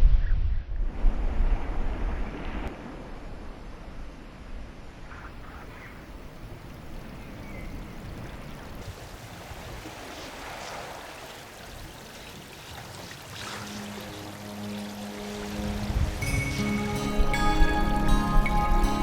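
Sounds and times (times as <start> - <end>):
running water: 5.6 - 19.0
music with held tones: 13.6 - 19.0.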